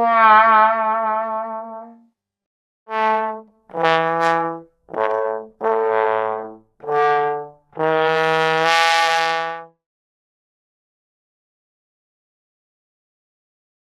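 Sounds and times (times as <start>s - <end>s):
sad trombone notes: 0.0s - 2.0s, 2.9s - 9.7s.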